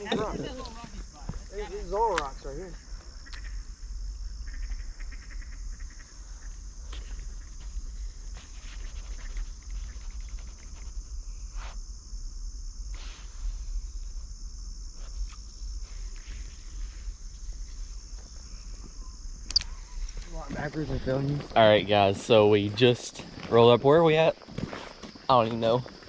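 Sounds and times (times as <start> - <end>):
high insect buzz: 0.0 - 26.0
steps on rocks: 22.7 - 26.0.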